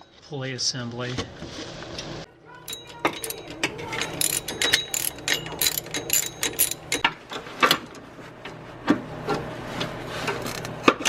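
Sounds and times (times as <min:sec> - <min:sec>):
hand ratchet clicking: 0:02.7 - 0:07.1.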